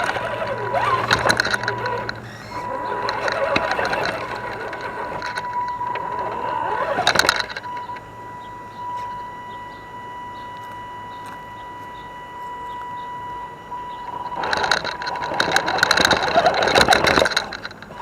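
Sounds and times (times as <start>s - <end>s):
tyres scrabbling over rock: 0.0s - 7.7s
rc car drivetrain whining: 0.0s - 18.0s.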